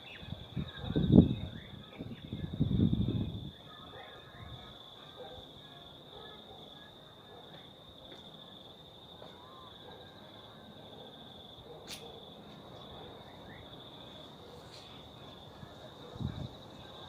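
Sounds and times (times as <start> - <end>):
insects trilling: 0.0 - 7.6, 8.4 - 17.0
sharp click: 11.8 - 12.2.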